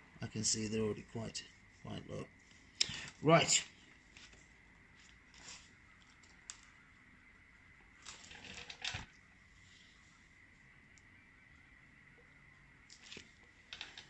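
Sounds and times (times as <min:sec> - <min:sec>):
clicks and scrapes of metal parts: 0:13.0 - 0:14.0.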